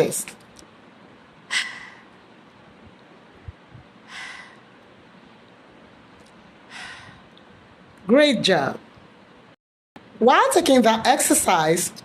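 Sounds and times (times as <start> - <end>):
woman breathing out: 1.5 - 2.1, 4.1 - 4.7, 6.7 - 7.3.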